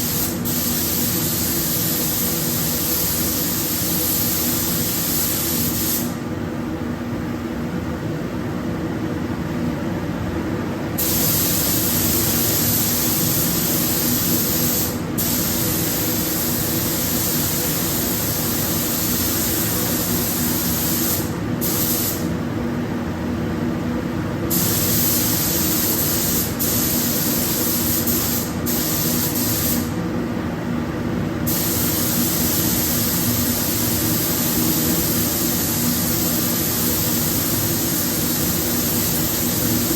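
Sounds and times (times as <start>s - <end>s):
paint spray gun hissing: 0.0s - 6.2s, 11.0s - 22.3s, 24.5s - 30.0s, 31.5s - 39.9s
mechanical hum: 0.0s - 39.9s.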